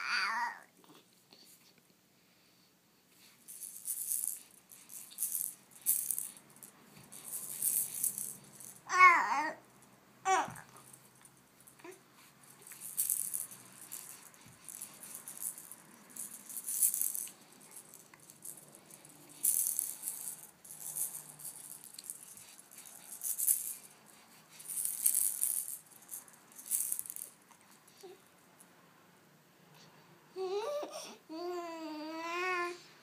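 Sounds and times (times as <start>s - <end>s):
rattle being shaken: 3.2s - 8.9s, 10.5s - 28.0s.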